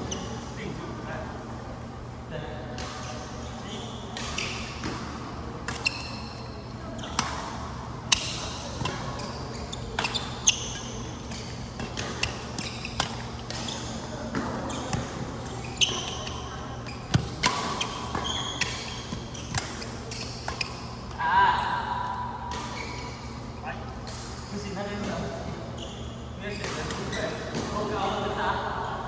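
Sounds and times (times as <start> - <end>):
shoes squeaking on court floor: 0.0 - 0.6, 2.8 - 21.8, 22.5 - 28.0
racket striking shuttlecock: 9.9 - 15.2, 17.0 - 20.8.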